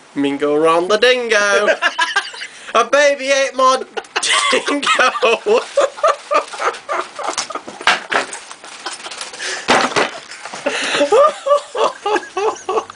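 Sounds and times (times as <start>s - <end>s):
wheezing gasping breaths: 9.2s - 9.7s, 10.6s - 11.1s
person laughing breathlessly: 10.5s - 12.9s.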